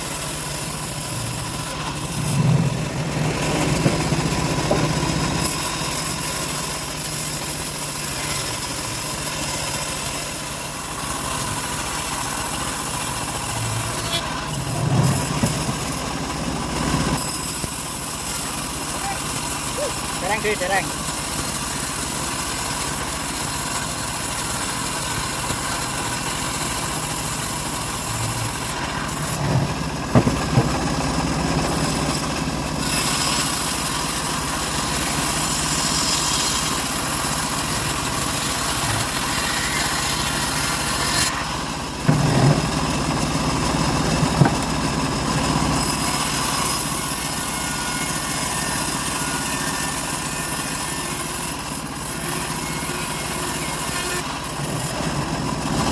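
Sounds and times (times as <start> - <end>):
bandsaw mill sawing log: 0.0 - 55.9
sharp knocks: 29.4 - 31.1, 44.2 - 44.7.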